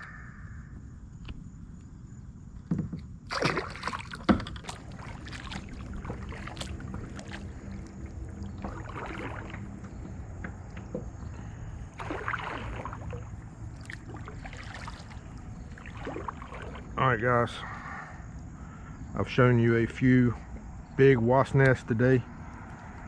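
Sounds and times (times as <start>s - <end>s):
boat engine low rumble: 0.0s - 23.0s
knocks and splashes: 2.6s - 17.0s
water sounds: 3.0s - 23.0s.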